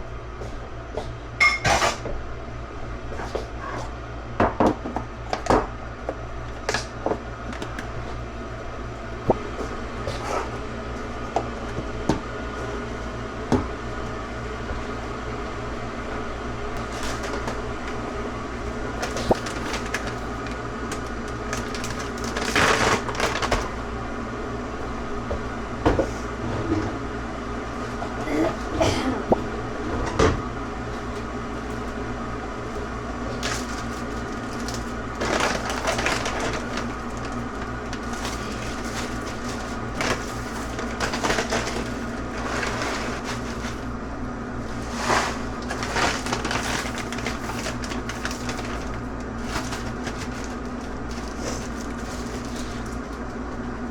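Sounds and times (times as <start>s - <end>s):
steady mechanical hum: 0.0s - 53.9s
rustling of things handled: 32.6s - 43.9s, 44.6s - 53.4s.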